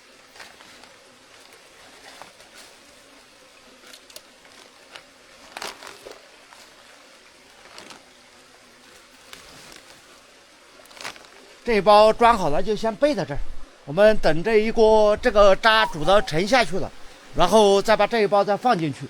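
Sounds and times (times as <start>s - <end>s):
faint steady hiss: 0.0s - 19.0s
honeycomb scooped into a sack: 0.2s - 13.2s.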